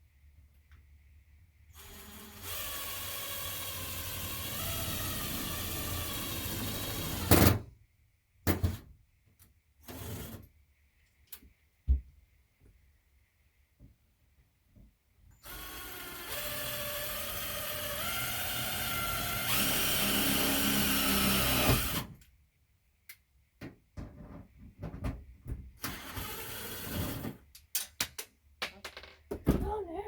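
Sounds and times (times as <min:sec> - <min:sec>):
power drill drilling into metal: 0:01.8 - 0:07.3, 0:15.4 - 0:22.1, 0:25.8 - 0:27.2
clicks and knocks: 0:27.6 - 0:29.7.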